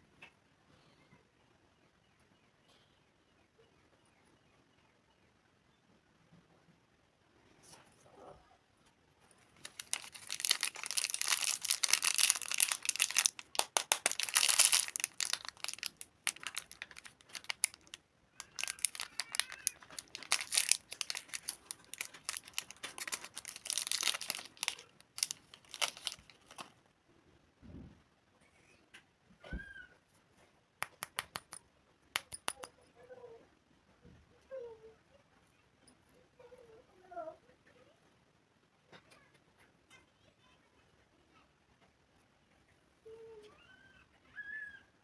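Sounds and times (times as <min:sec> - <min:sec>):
candy wrapper crinkling and tearing: 0:09.5 - 0:26.7, 0:30.8 - 0:31.6, 0:32.2 - 0:32.7.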